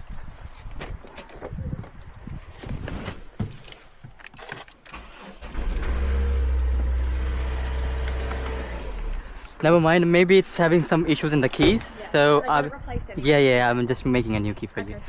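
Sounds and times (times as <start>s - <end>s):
car engine starting and idling: 4.4s - 9.5s.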